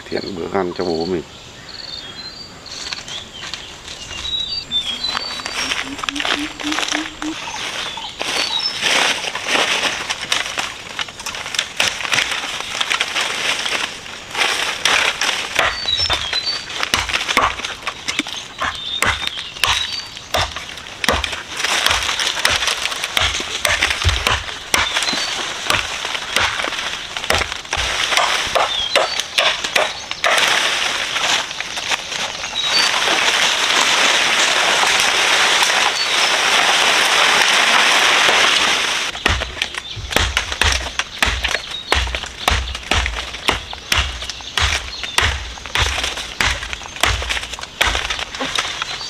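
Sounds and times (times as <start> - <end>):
dry brush and leaves crunching: 2.7 - 49.0
steady rustling hiss: 2.8 - 49.0
high chirps: 4.4 - 8.7
wood cracking and snapping: 4.9 - 49.0.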